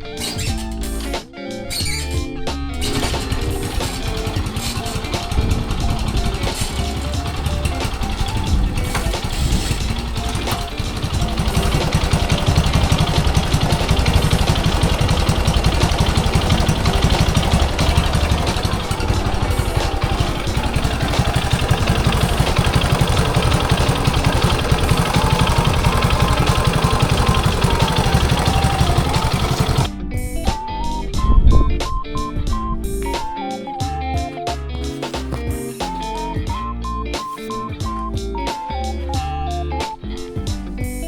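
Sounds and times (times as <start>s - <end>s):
motorcycle engine running: 2.9s - 29.9s
road and wind noise: 4.0s - 28.4s.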